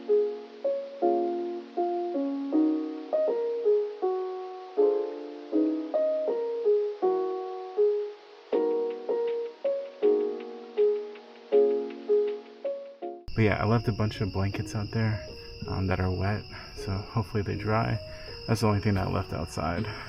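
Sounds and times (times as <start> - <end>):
light ticking percussion: 8.5 - 20.0.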